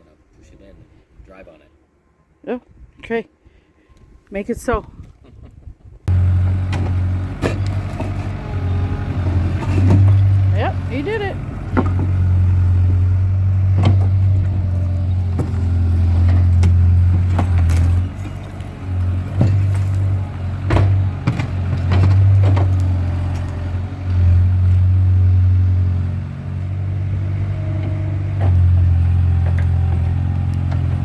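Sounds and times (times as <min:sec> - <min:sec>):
skid steer engine running: 0:06.1 - 0:31.0
knocks and clanks on rubble: 0:09.3 - 0:10.5, 0:11.6 - 0:12.4, 0:13.6 - 0:23.7.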